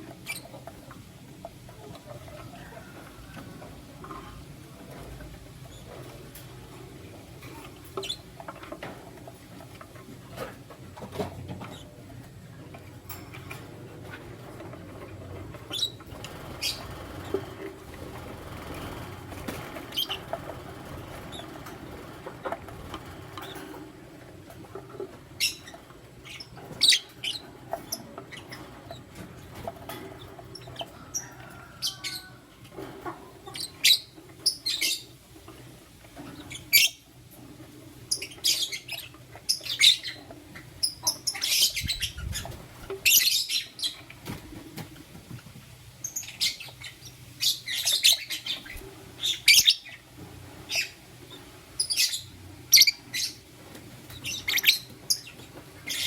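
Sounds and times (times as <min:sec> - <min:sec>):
lovebirds chirping: 0:00.0 - 0:03.4, 0:07.5 - 0:08.7, 0:15.4 - 0:17.5, 0:24.4 - 0:32.4, 0:33.0 - 0:35.2, 0:36.2 - 0:37.2, 0:38.0 - 0:44.2, 0:46.0 - 0:56.0.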